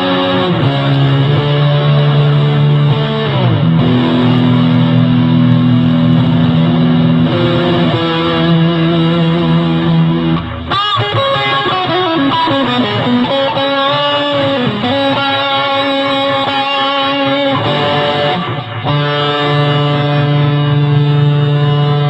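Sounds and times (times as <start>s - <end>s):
electric guitar chords with reverb: 0.0s - 22.0s.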